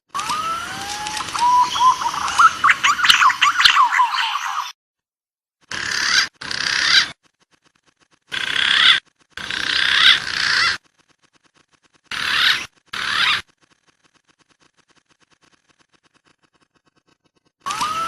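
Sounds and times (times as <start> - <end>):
recorded pigeon calls: 0.7 - 4.7.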